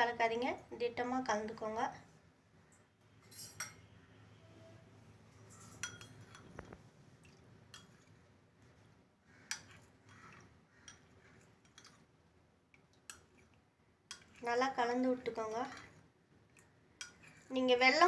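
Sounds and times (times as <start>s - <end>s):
spoon clinking in a cup: 3.3s - 3.9s, 5.5s - 6.8s.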